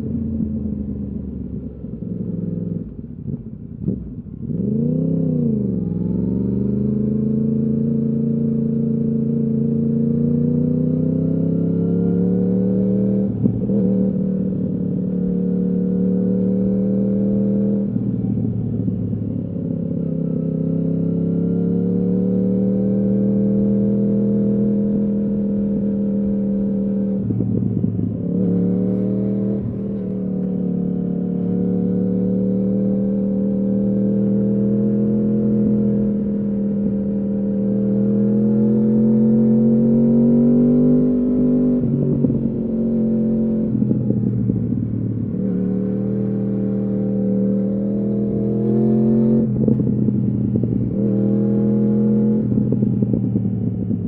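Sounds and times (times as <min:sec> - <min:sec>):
motorcycle engine riding: 0:00.0 - 0:54.0.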